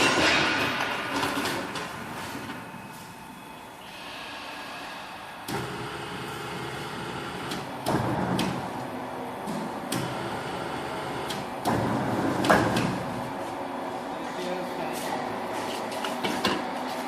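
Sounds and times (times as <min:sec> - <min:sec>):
machine motor hum: 0:03.5 - 0:14.2.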